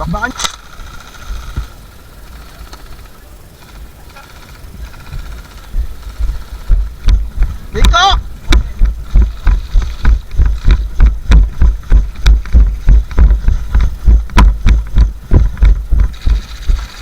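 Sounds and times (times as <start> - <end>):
heavy camera thumps from running: 5.0 - 17.0.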